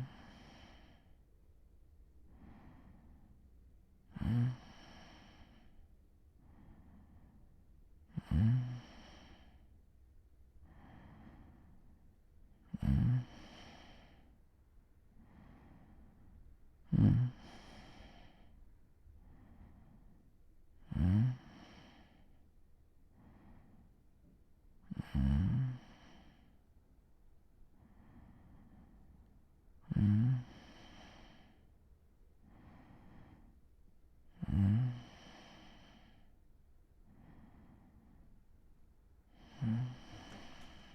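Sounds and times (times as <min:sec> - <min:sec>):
person snoring lightly: 0:04.2 - 0:05.4, 0:08.2 - 0:09.4, 0:12.7 - 0:14.2, 0:16.9 - 0:18.3, 0:20.9 - 0:22.1, 0:24.9 - 0:26.4, 0:29.9 - 0:31.4, 0:34.4 - 0:36.2, 0:39.4 - 0:40.9.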